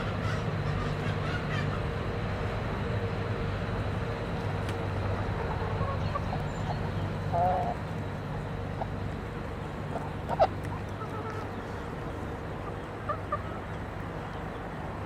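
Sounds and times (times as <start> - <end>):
low mechanical hum: 0.0 - 15.0
chickens clucking: 4.7 - 14.6.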